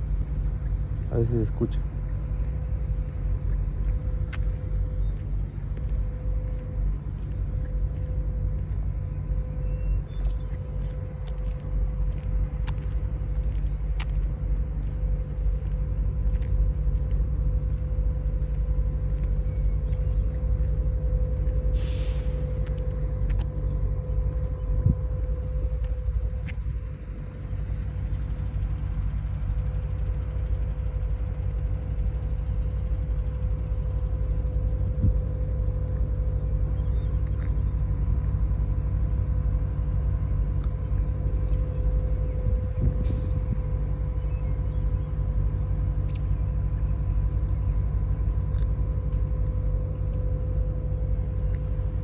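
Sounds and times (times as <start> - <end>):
low even rumble: 0.0 - 52.0
steady whistle-like tone: 9.1 - 10.3.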